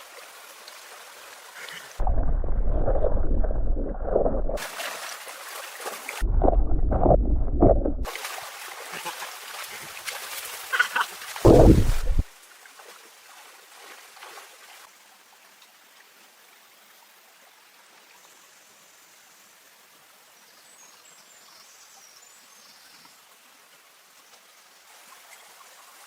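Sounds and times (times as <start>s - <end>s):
stream water running: 0.0s - 26.0s
loud low rumble: 2.0s - 4.6s, 6.2s - 8.1s, 11.4s - 12.2s.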